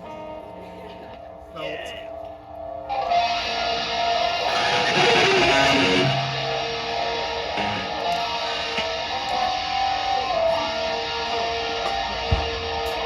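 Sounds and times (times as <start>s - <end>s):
strummed electric guitar: 2.1s - 13.0s
live band music: 4.6s - 6.5s, 7.6s - 8.8s.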